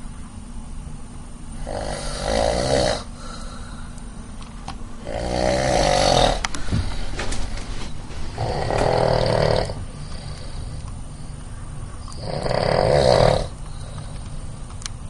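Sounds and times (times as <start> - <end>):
person snoring: 1.6 - 3.8, 5.0 - 6.9, 8.4 - 10.8, 12.2 - 14.0
low rumble of breath: 3.1 - 4.3, 6.4 - 11.8.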